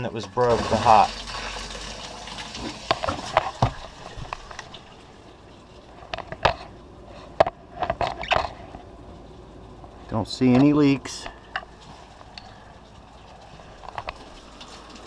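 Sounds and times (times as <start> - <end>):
shower water running: 0.3 - 5.7, 12.9 - 15.0.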